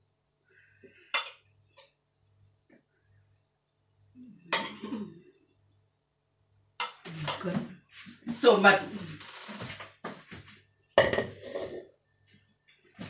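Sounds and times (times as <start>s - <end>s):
person coughing: 4.6s - 5.2s.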